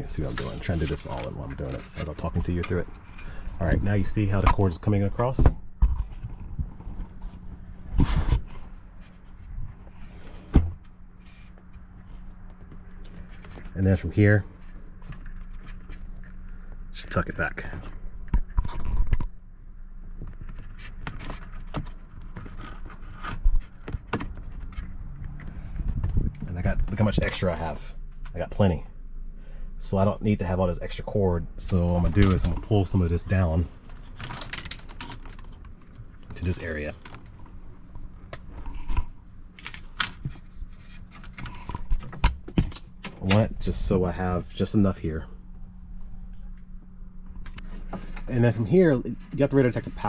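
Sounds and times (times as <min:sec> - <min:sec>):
cable rustling against plastic trim: 0:20.2 - 0:26.4, 0:32.1 - 0:43.4.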